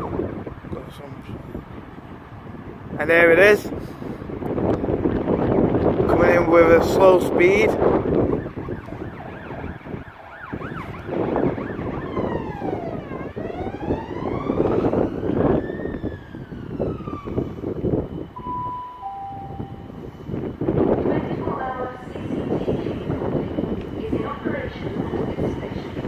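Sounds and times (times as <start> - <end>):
wailing siren tone: 6.8 - 26.0
short steady tones: 17.4 - 20.6.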